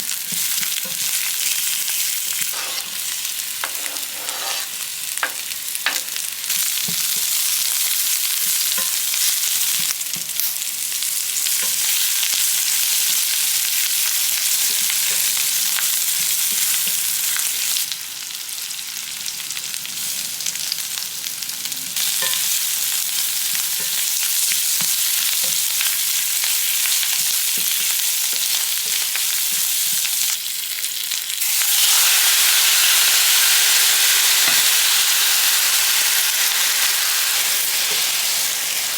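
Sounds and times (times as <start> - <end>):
food sizzling in frying pan: 0.0 - 38.9.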